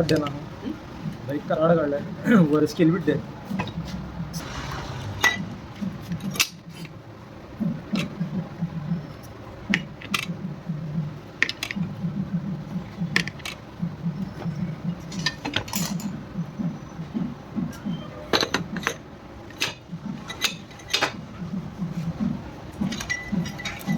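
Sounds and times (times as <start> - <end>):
low uneven rumble: 0.0 - 6.4.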